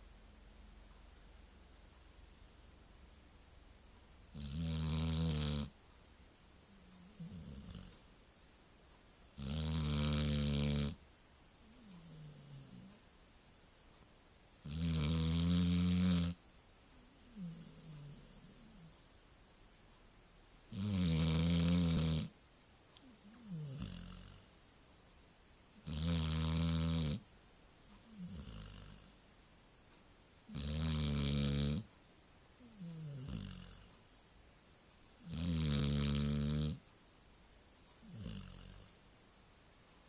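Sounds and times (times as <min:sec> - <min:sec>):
dog snoring: 0:04.3 - 0:05.8, 0:06.6 - 0:08.5, 0:09.4 - 0:11.0, 0:11.6 - 0:19.4, 0:20.7 - 0:22.3, 0:23.0 - 0:24.7, 0:25.8 - 0:29.4, 0:30.5 - 0:31.9, 0:32.6 - 0:34.2, 0:35.2 - 0:36.8, 0:37.7 - 0:39.2.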